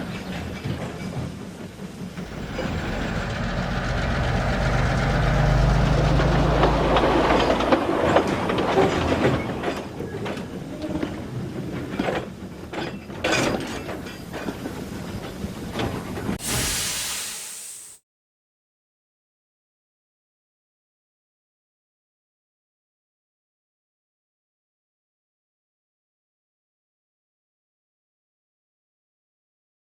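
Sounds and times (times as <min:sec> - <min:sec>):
wheels clattering over rail joints: 0:00.2 - 0:16.1
passing train rumble: 0:01.8 - 0:10.6.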